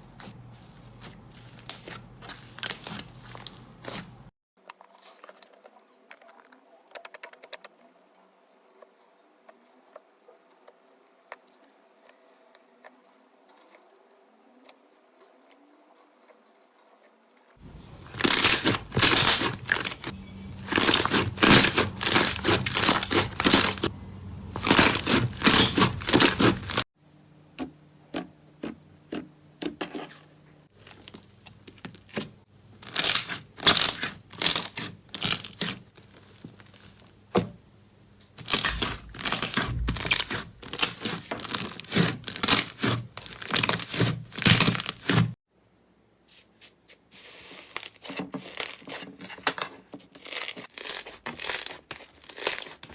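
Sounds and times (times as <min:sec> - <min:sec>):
slime crackling and popping: 0:17.9 - 0:23.9, 0:24.5 - 0:26.8, 0:38.4 - 0:45.2.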